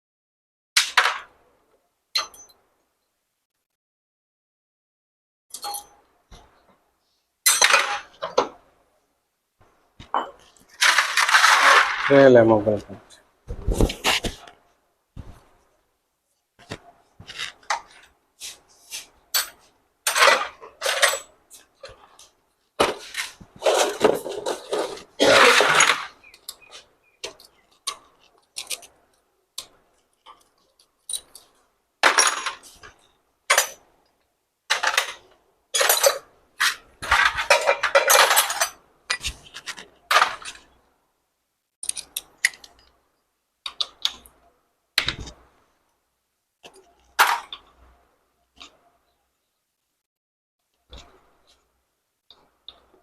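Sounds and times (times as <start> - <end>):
metal tools clinking: 5.5 - 6.0, 7.5 - 8.4, 19.3 - 21.3, 35.8 - 39.3.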